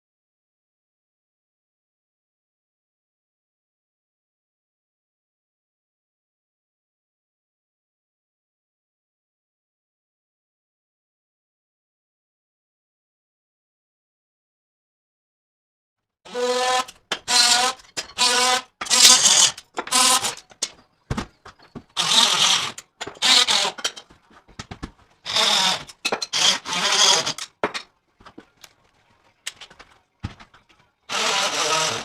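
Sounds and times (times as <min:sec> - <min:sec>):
small power tool buzzing: 0:16.3 - 0:20.4, 0:22.0 - 0:23.8, 0:25.3 - 0:27.4, 0:31.1 - 0:32.0.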